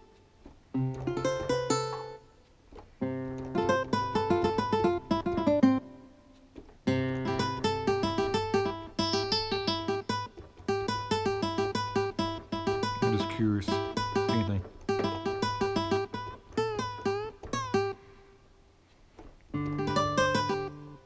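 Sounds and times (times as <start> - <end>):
keyboard picked guitar notes: 3.0 - 18.0, 19.6 - 21.0.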